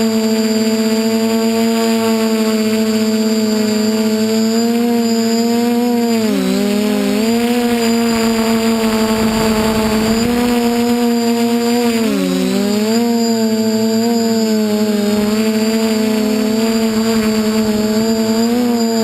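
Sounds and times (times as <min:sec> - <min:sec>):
drone propellers whining: 0:06.2 - 0:12.7.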